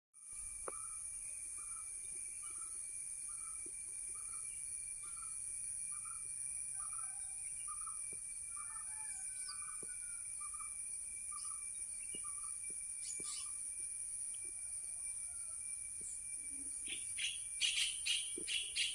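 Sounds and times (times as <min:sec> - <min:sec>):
insects droning: 0:00.2 - 0:18.9
high bird chirps: 0:11.4 - 0:13.5, 0:16.8 - 0:18.9.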